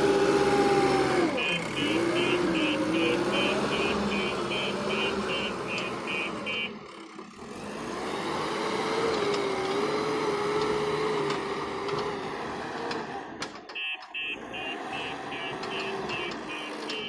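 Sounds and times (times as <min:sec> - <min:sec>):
backhoe engine running: 0:00.0 - 0:17.0
reversing alarm beeping: 0:01.4 - 0:06.8, 0:13.8 - 0:17.0.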